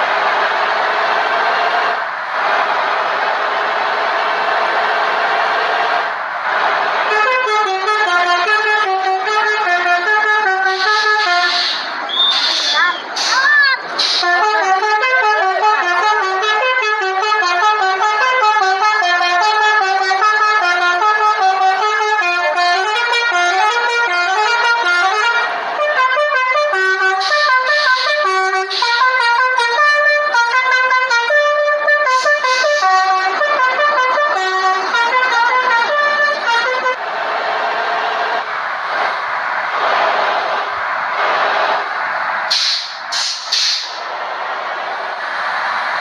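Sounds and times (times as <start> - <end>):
vehicle noise: 0.0 - 46.0
bus multi-tone horn tune: 6.6 - 38.2.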